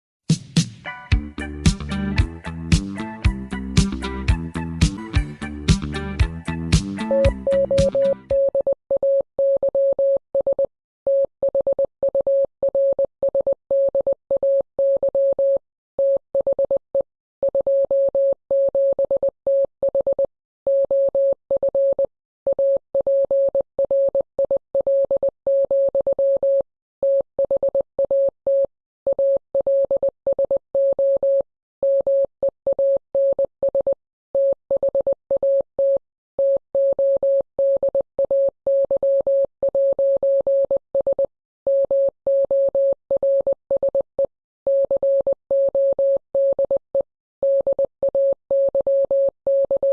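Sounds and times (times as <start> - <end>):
morse code beeps: 7.1 - 16.6, 44.7 - 46.8, 47.4 - 49.9.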